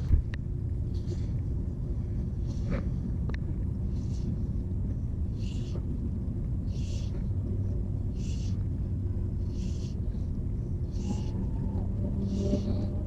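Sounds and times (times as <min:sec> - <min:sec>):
low rumble: 0:00.0 - 0:13.0.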